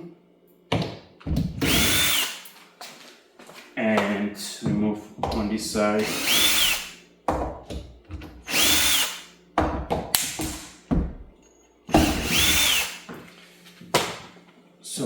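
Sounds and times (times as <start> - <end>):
power drill whining: 1.6 - 2.4, 6.0 - 7.0, 8.4 - 9.3, 11.9 - 13.1.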